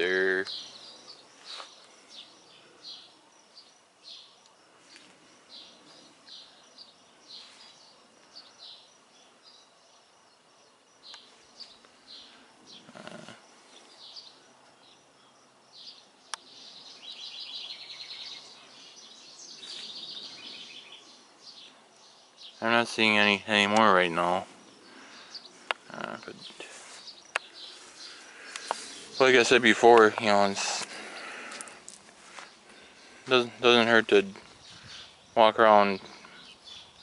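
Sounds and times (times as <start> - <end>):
faint insect drone: 0.0 - 37.0
small birds chirping: 0.0 - 37.0
rapid trilling bird calls: 5.5 - 31.8.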